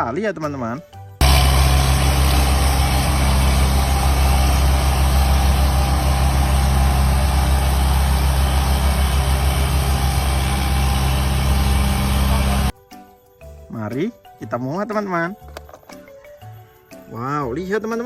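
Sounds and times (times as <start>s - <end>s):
large vehicle engine idling: 1.2s - 12.7s.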